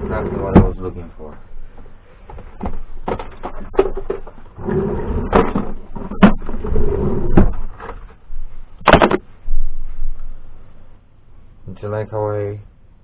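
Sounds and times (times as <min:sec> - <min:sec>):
wooden drawer sliding: 0:00.0 - 0:00.8, 0:03.6 - 0:08.0.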